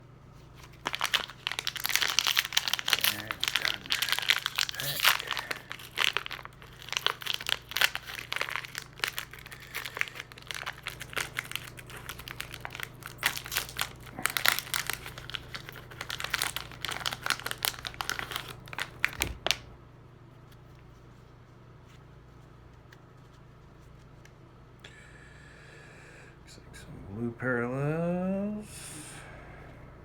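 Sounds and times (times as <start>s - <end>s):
wrapper crinkling and tearing: 0.5s - 19.7s.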